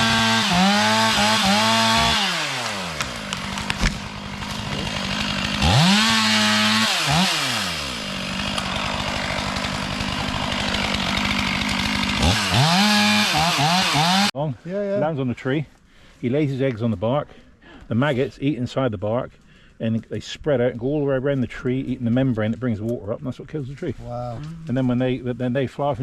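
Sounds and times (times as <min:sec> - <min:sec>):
chainsaw revving and idling: 0:00.0 - 0:14.3.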